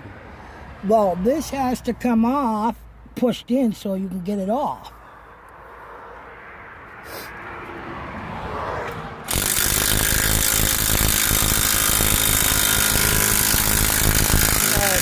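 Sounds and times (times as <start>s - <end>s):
power tool hammering: 9.3s - 15.0s.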